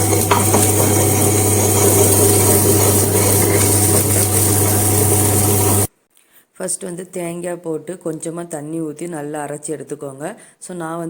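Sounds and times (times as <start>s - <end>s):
wet grinder running: 0.0s - 5.9s.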